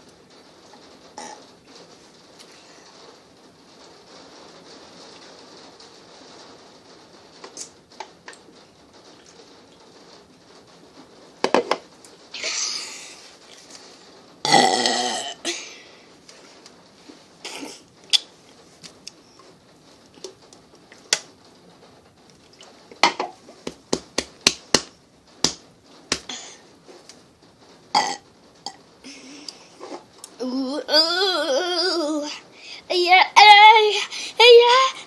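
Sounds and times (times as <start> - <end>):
person burping: 14.4 - 15.6, 28.0 - 28.8.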